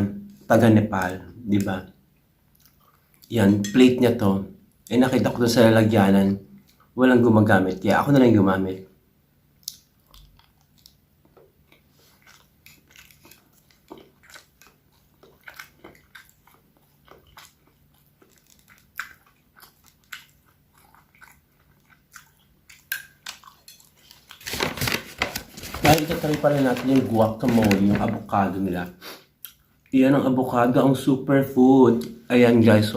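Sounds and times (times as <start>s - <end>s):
person chewing food: 2.5s - 3.3s, 9.6s - 24.6s.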